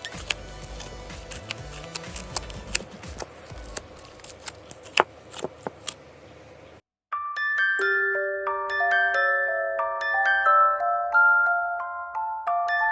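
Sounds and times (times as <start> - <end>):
mallet bells tune: 7.1 - 12.9.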